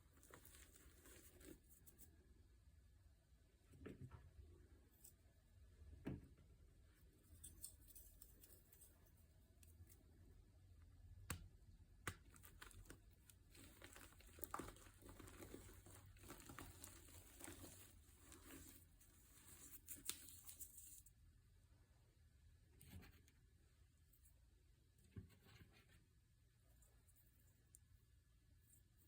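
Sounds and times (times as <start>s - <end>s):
crinkling and crumpling: 0.0s - 2.2s, 12.1s - 21.1s.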